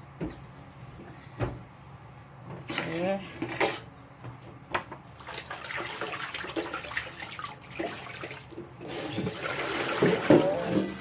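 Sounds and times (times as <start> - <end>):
small knocks and clatters: 2.5 - 5.1
water running from tap: 5.2 - 11.0.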